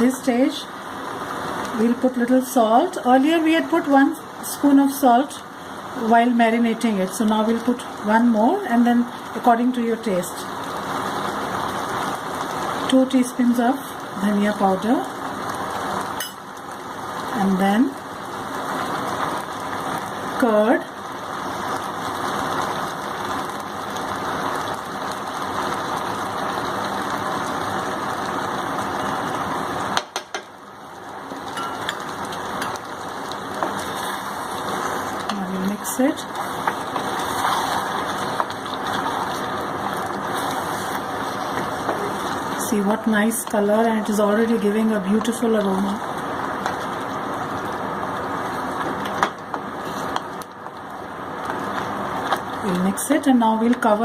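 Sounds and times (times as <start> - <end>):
chicken sizzling in a pan: 3.6 - 53.1.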